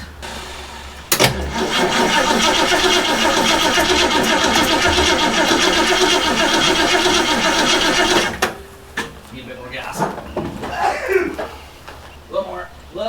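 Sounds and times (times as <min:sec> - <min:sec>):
car engine cranking: 0:00.0 - 0:12.1
starter click: 0:01.1 - 0:09.1.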